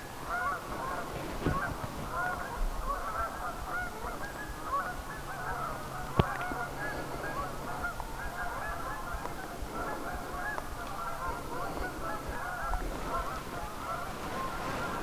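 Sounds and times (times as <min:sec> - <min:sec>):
geese honking: 0:00.0 - 0:15.0.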